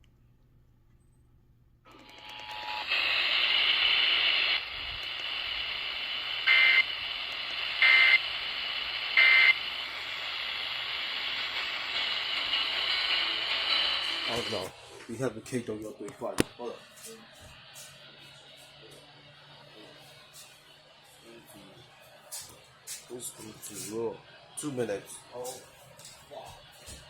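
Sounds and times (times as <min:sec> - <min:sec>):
radio static hissing: 0:02.6 - 0:26.8
loud data-burst beeps: 0:06.2 - 0:09.8.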